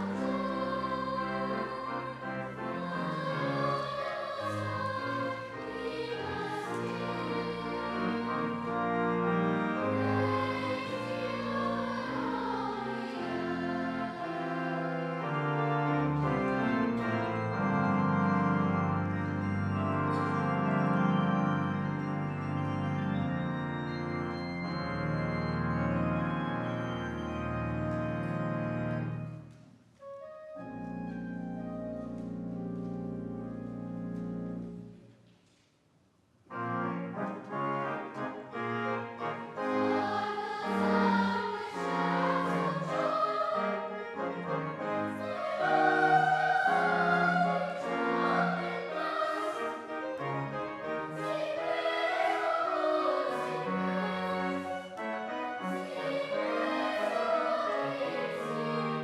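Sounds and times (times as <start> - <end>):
children's choir singing: 0.0 - 17.5, 37.1 - 59.0
held instrumental chord: 0.0 - 35.0, 36.5 - 59.0
instrumental accompaniment: 0.0 - 35.5, 36.5 - 59.0.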